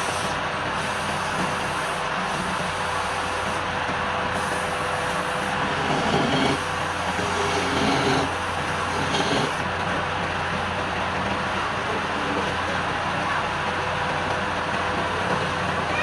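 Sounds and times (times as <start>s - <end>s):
wood lathe motor hum: 0.0s - 9.7s.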